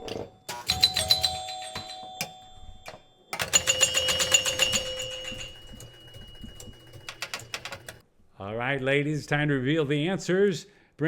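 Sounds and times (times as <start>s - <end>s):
mechanical clicking and knocking: 0.0s - 8.0s
pinball machine bells ringing: 0.0s - 8.0s.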